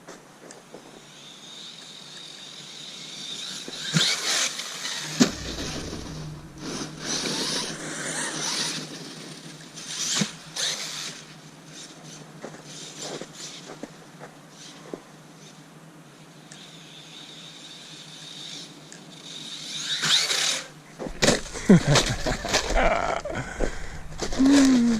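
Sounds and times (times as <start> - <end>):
motor and tyre noise bursts: 0.5 - 24.9
electric motor whine: 1.0 - 12.0.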